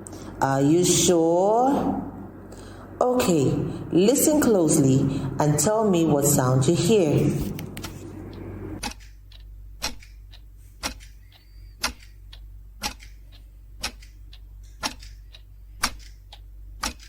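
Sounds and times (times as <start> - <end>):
clock ticking: 8.3 - 17.0.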